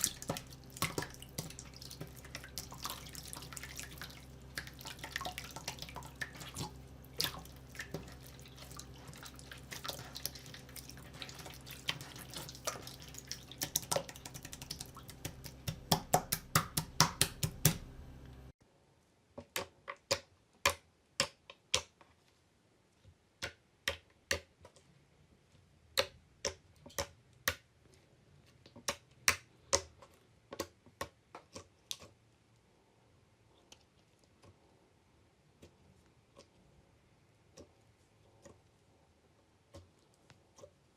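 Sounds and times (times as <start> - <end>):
slime popping: 0.0 - 17.9
slime squeezed wet crackling: 0.0 - 17.9.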